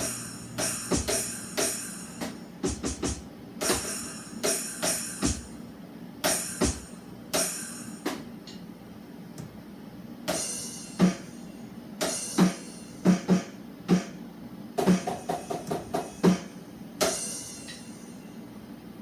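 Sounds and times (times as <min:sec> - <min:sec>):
cymbal crashes: 0:00.0 - 0:05.6, 0:06.2 - 0:08.0, 0:10.3 - 0:11.4, 0:12.0 - 0:13.2, 0:14.9 - 0:18.1.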